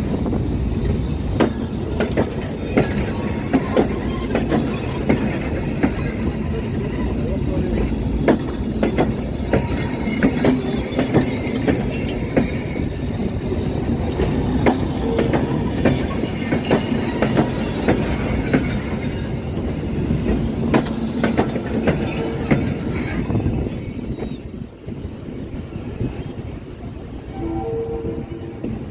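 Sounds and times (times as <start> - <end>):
train rumbling on rails: 0.0 - 28.9
wheels clacking and knocking: 1.4 - 23.6.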